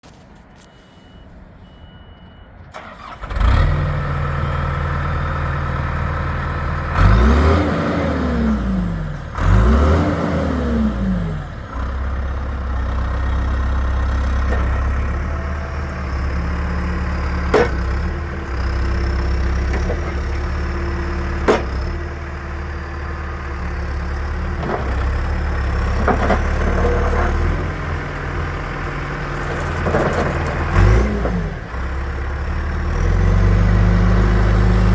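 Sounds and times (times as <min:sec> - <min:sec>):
diesel engine starting and idling: 0:02.5 - 0:34.9
engine revving: 0:02.8 - 0:34.9.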